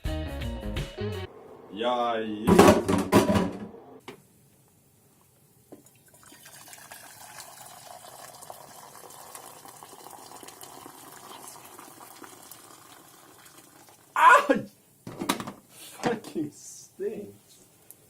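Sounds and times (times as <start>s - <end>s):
water pouring in a stream: 5.9s - 14.0s.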